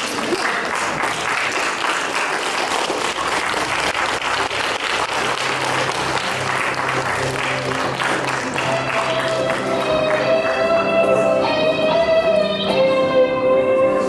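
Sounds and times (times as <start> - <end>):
audience applauding: 0.0 - 10.8.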